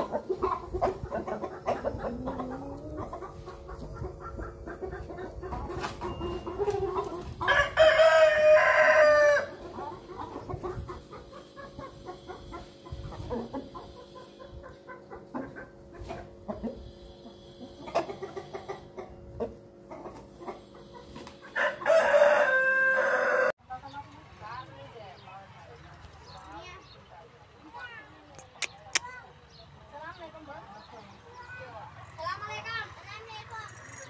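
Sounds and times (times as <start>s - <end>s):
chickens clucking: 0.0s - 34.0s
rooster crowing: 7.5s - 9.6s, 21.6s - 23.6s.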